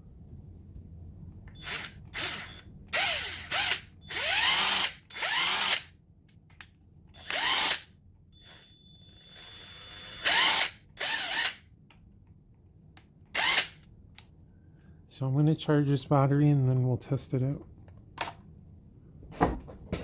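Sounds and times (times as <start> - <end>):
cordless impact wrench spinning: 1.6 - 5.9, 9.4 - 11.6.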